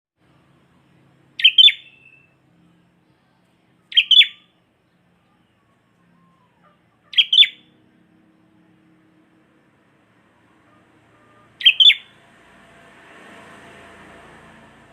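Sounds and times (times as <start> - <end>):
bird double-note calls: 1.4 - 2.3, 3.9 - 4.5, 6.4 - 7.7, 11.2 - 12.1.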